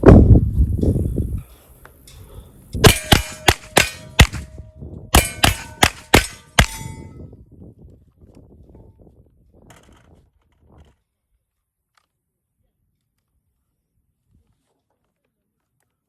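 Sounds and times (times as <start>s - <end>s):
rifle shots: 2.8s - 4.6s, 5.2s - 7.0s
steel plate ringing: 2.8s - 4.6s, 5.2s - 7.2s.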